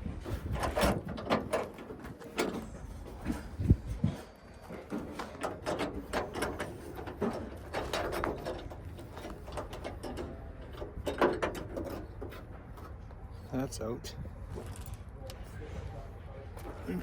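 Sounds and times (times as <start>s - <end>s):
metal clatter: 0.0s - 13.0s
metal clicks and rattles: 0.3s - 3.8s, 4.7s - 13.0s.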